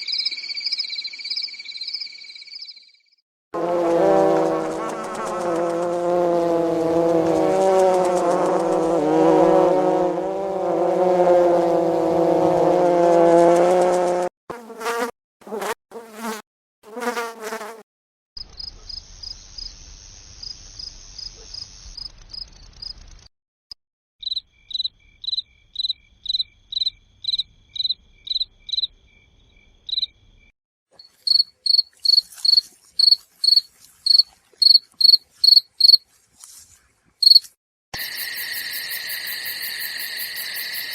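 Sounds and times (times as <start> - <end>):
insect chorus: 0.0 - 3.0, 18.4 - 23.3, 24.2 - 36.0, 37.2 - 40.9
cricket chirps: 0.0 - 3.2, 18.4 - 23.3, 24.2 - 36.0, 37.2 - 40.9
short insect buzzes: 3.6 - 17.8.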